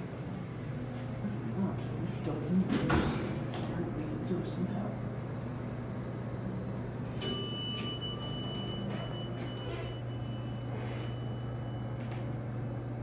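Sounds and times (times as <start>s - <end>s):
steady low hum: 3.4s - 13.0s
elevator chime: 7.1s - 12.5s.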